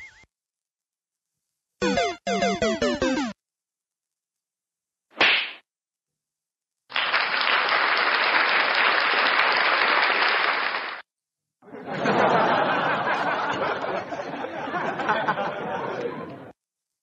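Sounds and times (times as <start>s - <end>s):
crowd applause and cheering: 6.9s - 11.0s
applause: 6.9s - 11.1s.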